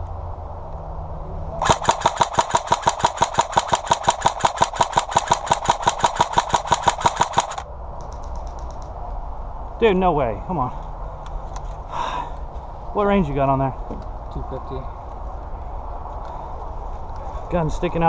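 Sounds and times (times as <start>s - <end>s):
airsoft rifle firing: 1.6s - 7.7s.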